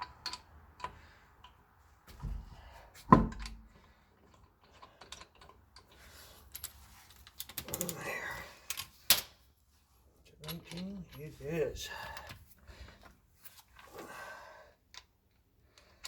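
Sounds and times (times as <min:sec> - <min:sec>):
light metal clicks and taps: 0:00.0 - 0:01.6.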